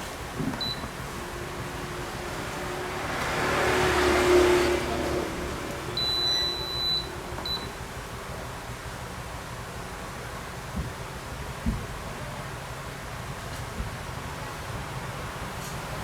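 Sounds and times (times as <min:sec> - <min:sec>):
high electronic beep: 0:06.0 - 0:07.7.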